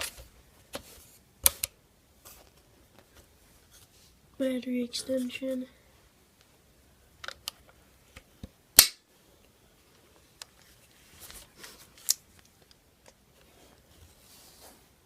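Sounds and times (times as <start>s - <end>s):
loud sharp click: 8.8s - 9.0s.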